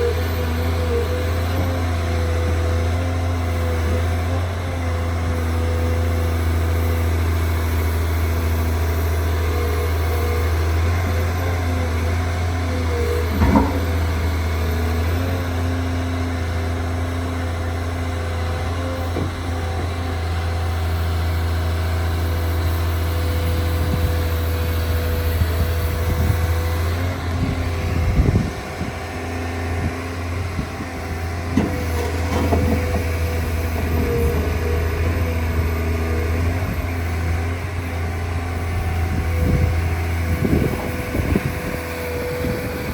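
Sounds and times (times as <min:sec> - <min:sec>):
diesel engine running: 0:00.0 - 0:42.9
sharp knocks and clunks: 0:13.3 - 0:14.2, 0:31.5 - 0:33.9.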